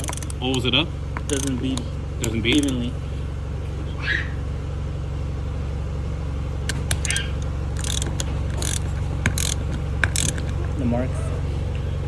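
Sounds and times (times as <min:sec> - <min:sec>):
ratchet wrench clicking: 0:00.0 - 0:02.9, 0:06.7 - 0:10.8
steady low hum: 0:00.0 - 0:12.0.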